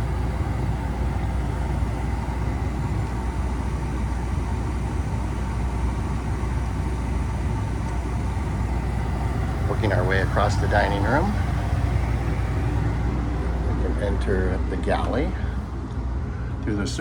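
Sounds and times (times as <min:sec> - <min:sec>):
low rumbling background noise: 0:00.0 - 0:17.0.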